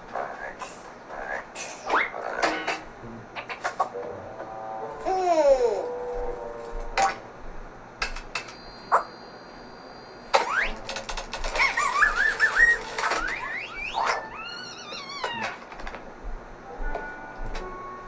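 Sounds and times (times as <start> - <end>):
whistle-like glides and warbling tones: 11.7 - 14.6.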